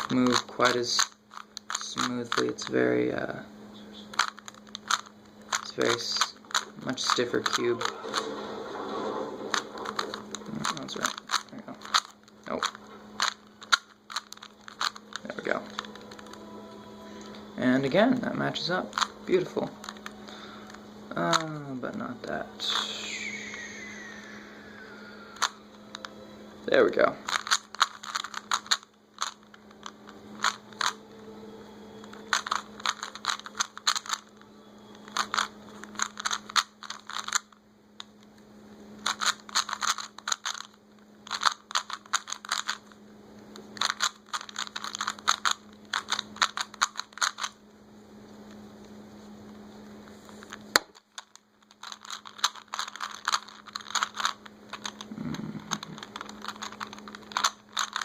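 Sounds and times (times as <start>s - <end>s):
plastic cube clicking as twisted: 0.0s - 2.7s, 4.1s - 8.3s, 9.5s - 16.4s, 18.9s - 19.1s, 25.4s - 26.1s, 27.2s - 31.0s, 32.0s - 37.6s, 39.0s - 42.8s, 43.8s - 47.6s, 50.5s - 58.0s
steady low hum: 0.0s - 58.0s.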